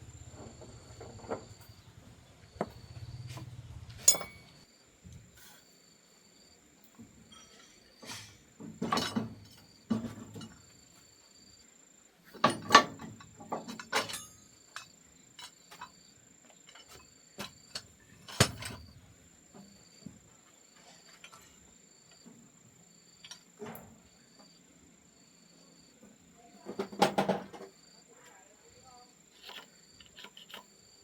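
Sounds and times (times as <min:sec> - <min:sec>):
cricket chirping: 0:00.0 - 0:31.0
knocks and clinks of objects: 0:04.0 - 0:04.6, 0:07.2 - 0:10.7, 0:12.4 - 0:16.0.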